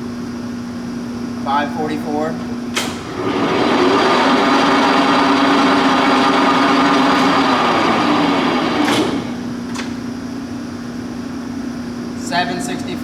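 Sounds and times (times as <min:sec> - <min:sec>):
lathe headstock running: 0:02.9 - 0:09.7.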